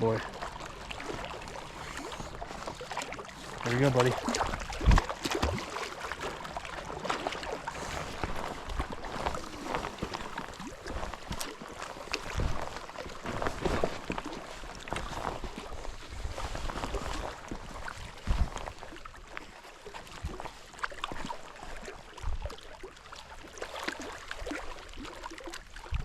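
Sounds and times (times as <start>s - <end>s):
water lapping on rocky shore: 0.0s - 25.8s.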